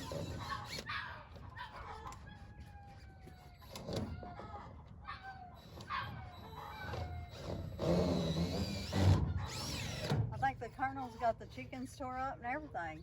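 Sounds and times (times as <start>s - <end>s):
chickens clucking and squawking: 0.0s - 3.3s, 4.0s - 7.3s.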